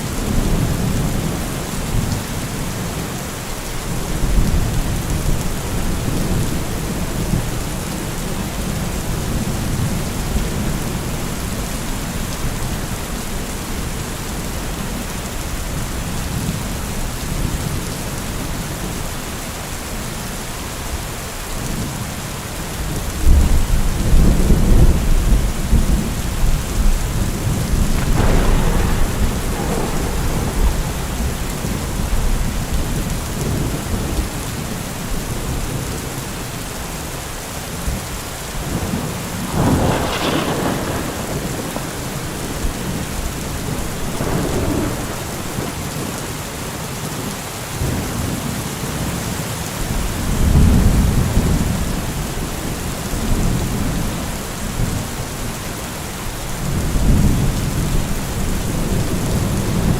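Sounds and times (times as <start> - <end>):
steady rain: 0.0 - 59.9
rumbling thunder: 23.2 - 34.4, 38.6 - 46.8, 49.9 - 55.5
thunder crack: 25.8 - 33.8, 38.8 - 46.4.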